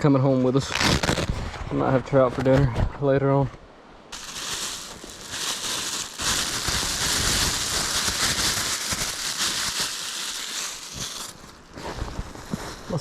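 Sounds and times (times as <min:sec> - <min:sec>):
rushing river water: 0:03.8 - 0:11.8.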